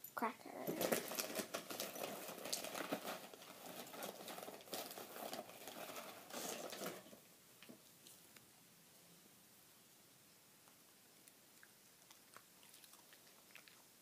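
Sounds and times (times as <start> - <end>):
dog chewing crackers: 0.8 - 6.0, 11.6 - 14.0.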